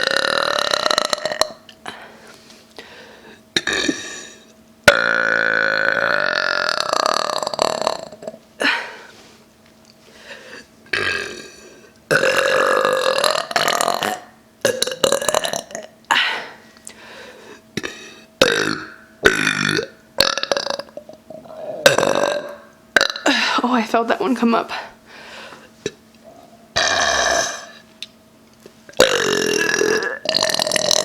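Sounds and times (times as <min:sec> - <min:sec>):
woman belching: 0:00.0 - 0:01.6, 0:03.6 - 0:04.0, 0:04.9 - 0:08.4, 0:10.9 - 0:11.5, 0:12.1 - 0:15.9, 0:18.4 - 0:23.5, 0:26.8 - 0:27.8, 0:29.0 - 0:31.0.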